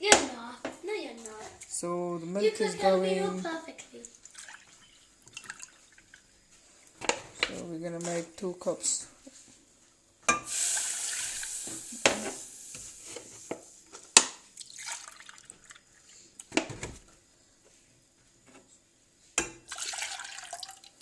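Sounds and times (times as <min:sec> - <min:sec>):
milk pouring into a pan: 0:04.0 - 0:06.4, 0:10.5 - 0:11.8, 0:14.5 - 0:16.2, 0:19.6 - 0:21.0.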